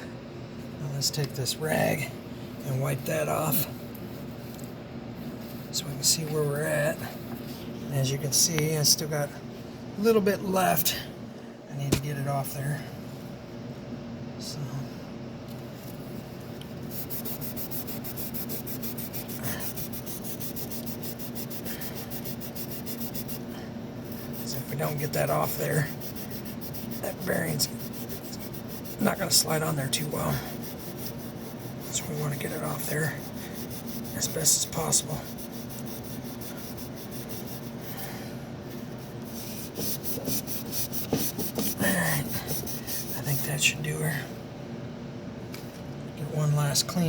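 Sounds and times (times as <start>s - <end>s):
sanding rust off steel shaft: 16.9s - 37.8s.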